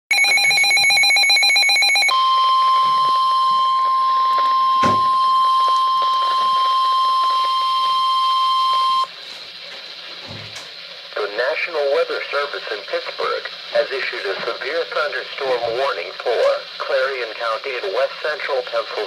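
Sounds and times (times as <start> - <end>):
steady alert tone: 0.1 - 9.0
buzzing digital header data: 0.1 - 9.1.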